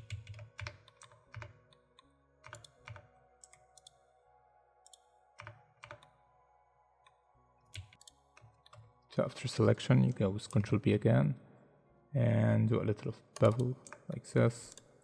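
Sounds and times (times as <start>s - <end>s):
keyboard and mouse clicks: 0.0s - 1.8s, 2.4s - 4.0s, 4.8s - 6.1s, 7.7s - 8.8s, 13.4s - 14.9s.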